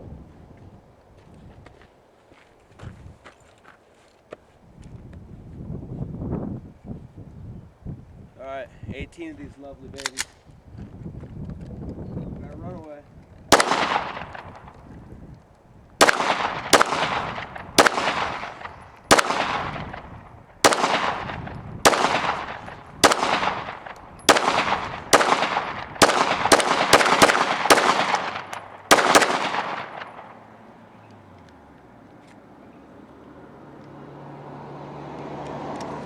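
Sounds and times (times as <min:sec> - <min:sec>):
pistol shots with echo: 0:13.5 - 0:14.8, 0:16.0 - 0:30.6.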